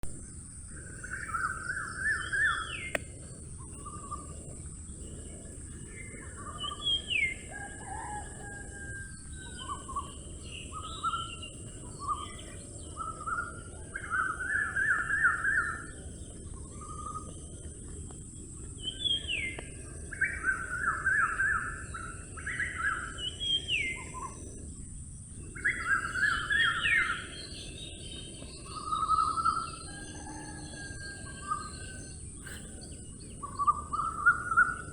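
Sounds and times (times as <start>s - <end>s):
constant high hiss: 0.0s - 34.9s
forest birds singing: 0.0s - 34.9s
low background rumble: 0.0s - 34.9s.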